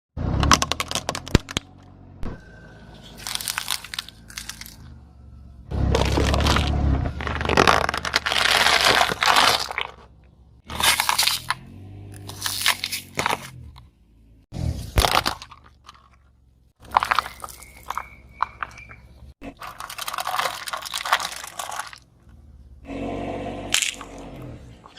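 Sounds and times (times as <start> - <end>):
crackers crunching under a car: 0.2 - 2.0, 2.8 - 13.9, 14.5 - 22.9, 23.6 - 24.9
low rumble: 1.4 - 10.7.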